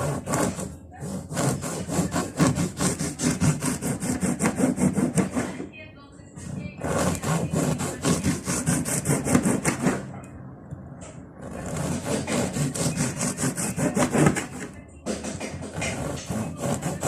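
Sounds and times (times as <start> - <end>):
knife sawing through crusty bread: 0.0 - 5.6, 6.8 - 10.1, 11.4 - 14.7, 15.6 - 17.0.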